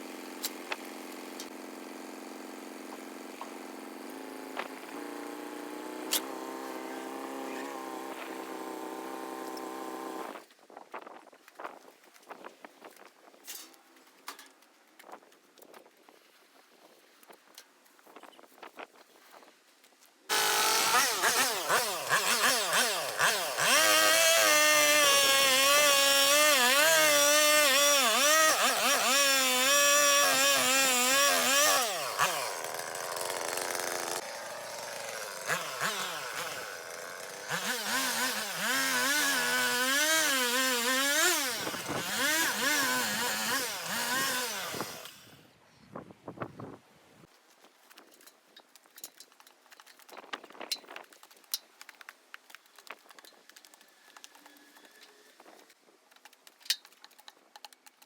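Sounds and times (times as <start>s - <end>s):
chainsaw revving: 0.0s - 10.4s, 20.3s - 45.4s.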